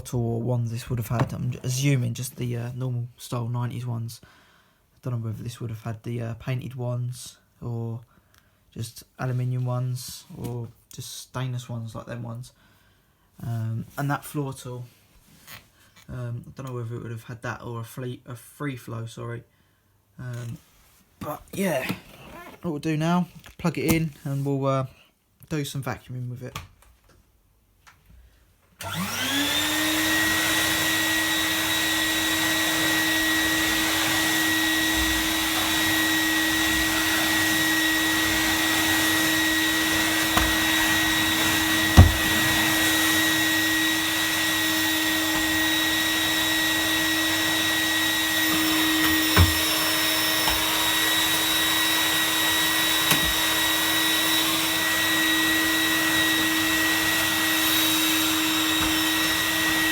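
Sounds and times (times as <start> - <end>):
vacuum cleaner motor whine: 28.8 - 59.9
short knocks: 40.3 - 42.7.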